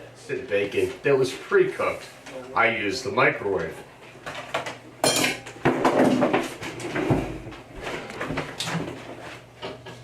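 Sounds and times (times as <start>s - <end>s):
kitchen items knocking and rattling: 4.3s - 10.0s.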